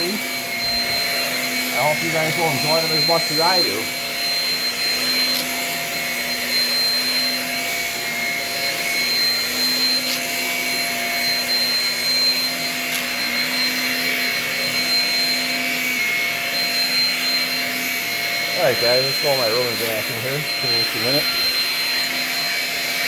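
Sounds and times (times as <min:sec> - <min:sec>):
stick vacuum running: 0:00.0 - 0:23.0.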